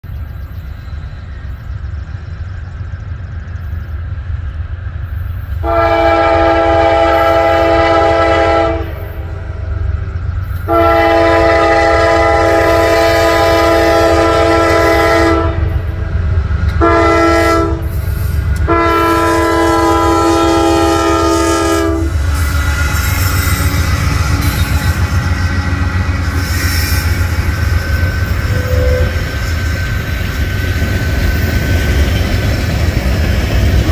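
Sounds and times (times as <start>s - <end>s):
low rumble of passing train: 0.0s - 33.9s
locomotive air horn blasts: 5.6s - 9.2s, 10.7s - 15.8s, 16.7s - 18.0s, 18.6s - 26.8s, 28.5s - 29.4s.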